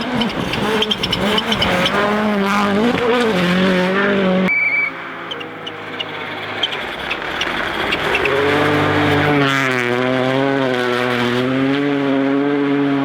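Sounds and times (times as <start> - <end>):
rally car engine at high revs: 0.0 - 13.0
engine cracks: 5.1 - 9.4.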